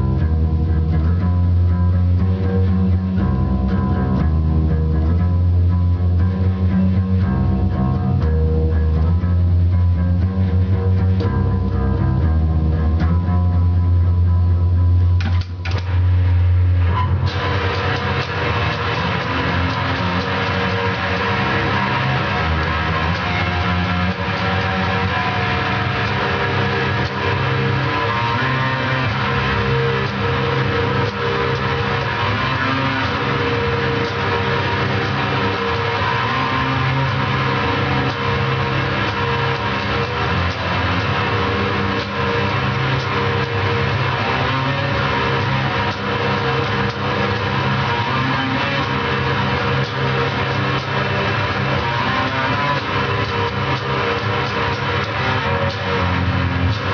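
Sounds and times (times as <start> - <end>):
amplified guitar low sustained notes: 0.0 - 56.9
distorted doom drone: 0.0 - 56.9
sharp clicks: 15.2 - 16.0.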